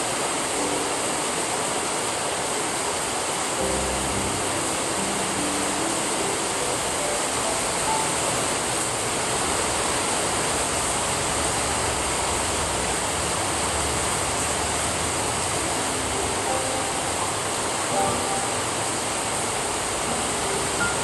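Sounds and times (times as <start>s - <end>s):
steady rain falling: 0.0s - 21.0s
faint soft music notes: 3.6s - 10.0s, 15.2s - 21.0s.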